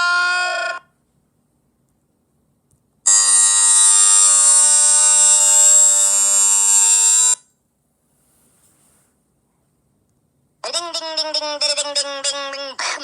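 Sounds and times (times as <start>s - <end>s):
electronic alarm buzz: 3.1s - 7.4s.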